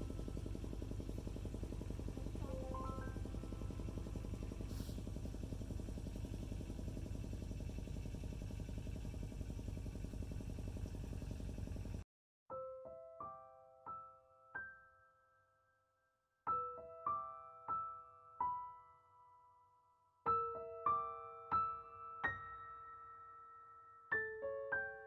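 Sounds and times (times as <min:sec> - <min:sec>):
slow gentle piano music: 0:00.0 - 0:04.8, 0:12.5 - 0:25.0.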